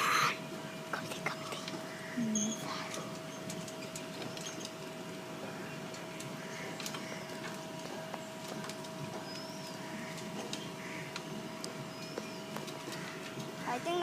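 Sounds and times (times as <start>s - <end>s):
faint bird chirps: 0.0s - 4.8s
steady low hum: 0.0s - 14.0s.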